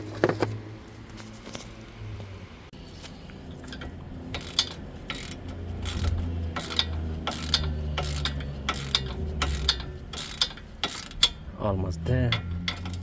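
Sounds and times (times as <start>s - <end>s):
ratchet wrench clicking: 3.6s - 11.5s, 12.3s - 13.0s.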